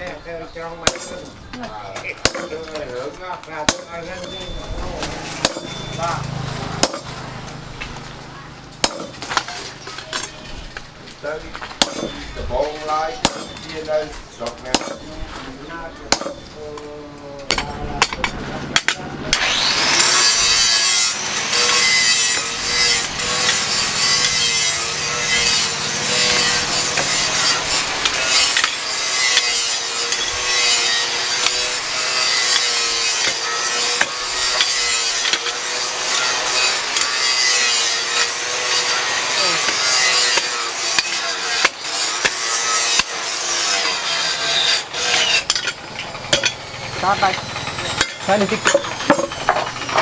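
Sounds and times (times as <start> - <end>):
power tool motor whine: 19.3 - 50.0.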